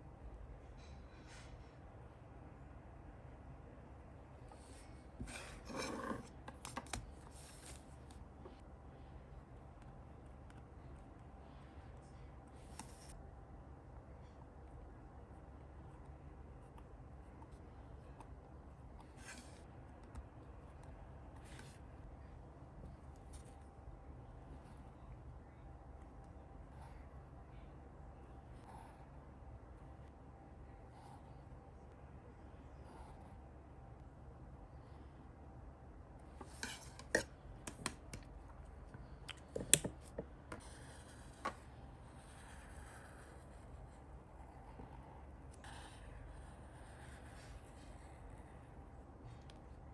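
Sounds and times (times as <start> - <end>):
low steady hum: 0.0 - 49.9
pen scratching on paper: 4.7 - 7.8, 40.5 - 48.7.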